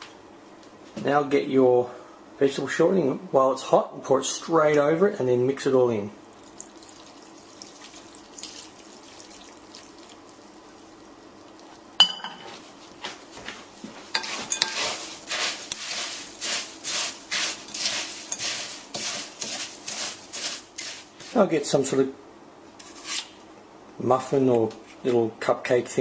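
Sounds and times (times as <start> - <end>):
spoon stirring and scraping bowl: 13.8 - 21.6, 22.8 - 23.3
faint crackling of rice cereal: 14.8 - 21.5.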